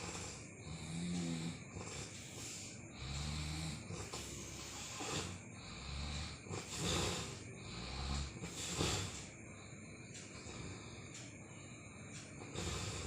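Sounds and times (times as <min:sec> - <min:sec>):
person snoring: 0:00.0 - 0:09.2, 0:12.4 - 0:13.0
noisy breath: 0:00.0 - 0:13.0.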